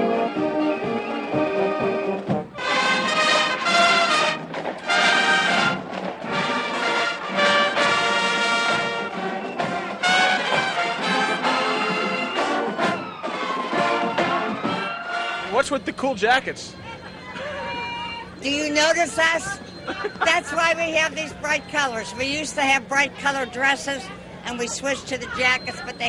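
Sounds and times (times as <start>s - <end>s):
marching band brass playing: 0.0s - 15.8s.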